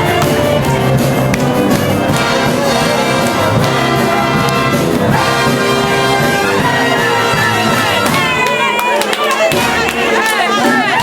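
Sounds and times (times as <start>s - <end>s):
wind band playing dance music: 0.0s - 11.0s.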